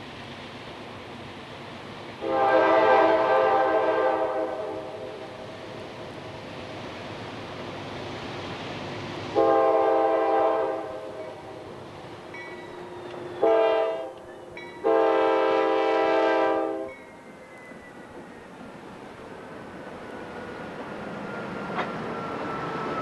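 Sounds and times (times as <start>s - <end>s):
locomotive running: 0.0s - 23.0s
locomotive air horn blasts: 2.2s - 5.2s, 9.4s - 11.3s, 13.4s - 17.0s.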